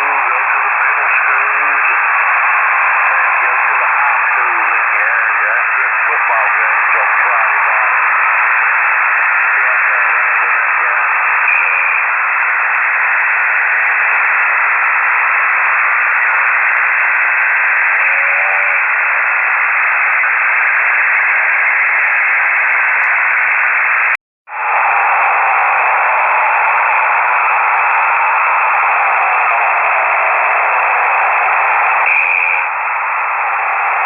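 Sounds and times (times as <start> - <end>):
faint garbled voice: 0.0 - 23.4
radio static hiss: 0.0 - 34.0.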